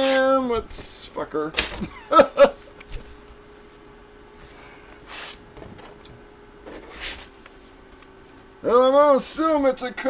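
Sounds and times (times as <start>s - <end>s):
man's voice: 8.6s - 10.0s.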